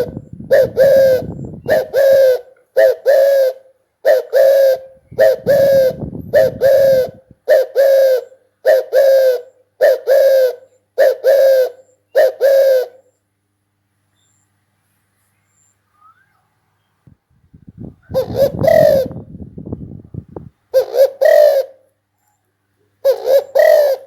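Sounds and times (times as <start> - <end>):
dove cooing: 0.0 - 13.1, 17.8 - 19.4, 20.7 - 21.9, 23.0 - 24.0.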